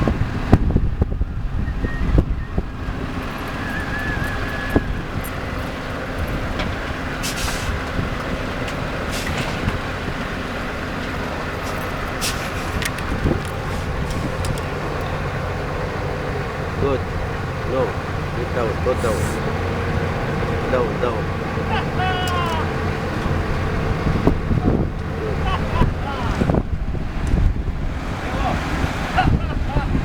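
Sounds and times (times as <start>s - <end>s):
diesel paving machinery running: 0.0s - 30.0s
thin whistle-like tone: 1.6s - 5.0s
short hisses: 7.2s - 7.8s, 12.2s - 12.8s, 19.0s - 19.5s.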